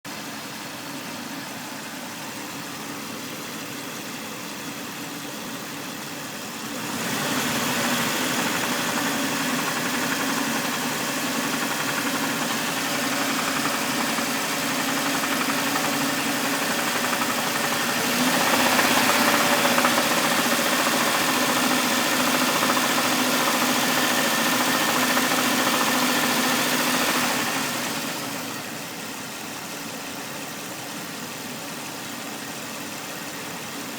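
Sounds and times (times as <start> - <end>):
car engine knocking: 6.8 - 28.4.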